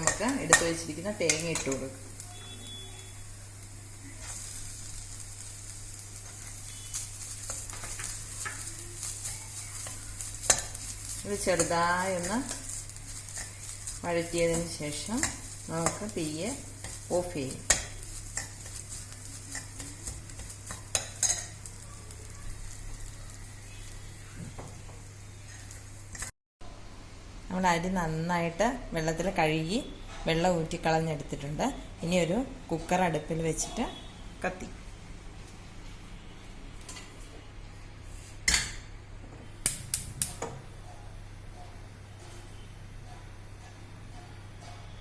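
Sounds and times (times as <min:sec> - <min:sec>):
spoon stirring in a pan: 0:00.0 - 0:03.1, 0:03.7 - 0:26.3
vegetables sizzling in oil: 0:00.0 - 0:26.4.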